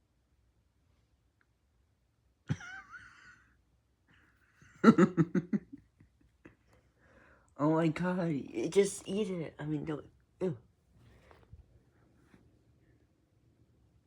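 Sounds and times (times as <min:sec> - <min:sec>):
person giggling: 0:02.5 - 0:03.4, 0:04.7 - 0:05.8.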